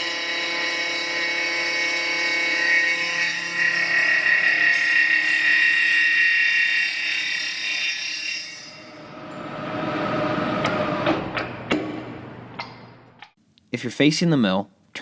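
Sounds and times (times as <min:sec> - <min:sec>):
mill cutter whining: 0:08.8 - 0:11.8
rough machine noise: 0:08.8 - 0:12.2.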